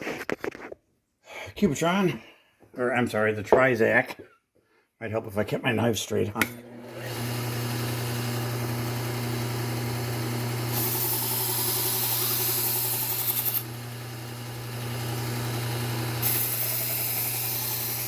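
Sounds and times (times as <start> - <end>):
belt sander motor humming: 6.4 - 18.0
knife grinding on sanding belt: 10.7 - 13.7, 16.2 - 18.0.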